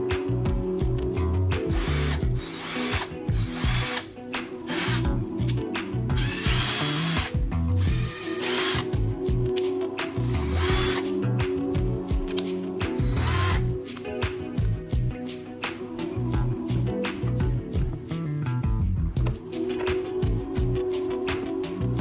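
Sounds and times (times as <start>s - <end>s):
background music with a beat: 0.0s - 22.0s
cordless drill running: 1.7s - 4.0s, 4.6s - 5.1s, 6.2s - 8.9s, 10.2s - 11.0s, 13.0s - 13.7s.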